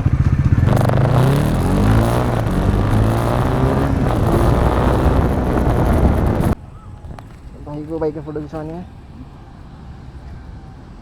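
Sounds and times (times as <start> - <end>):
motorcycle engine revving: 0.0 - 6.6.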